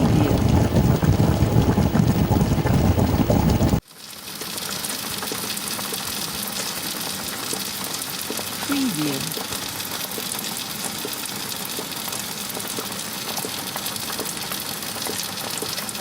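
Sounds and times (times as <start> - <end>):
dense bass-heavy noise: 0.0 - 3.8
oil crackles: 0.0 - 16.0.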